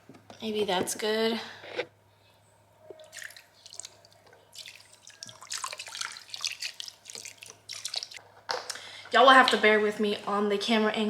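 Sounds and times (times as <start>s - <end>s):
broth splashing into a pot: 3.1s - 8.2s.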